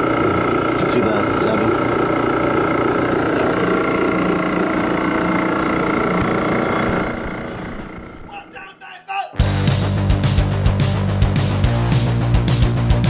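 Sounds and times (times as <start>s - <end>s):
recovery machine motor hum: 0.0s - 8.5s.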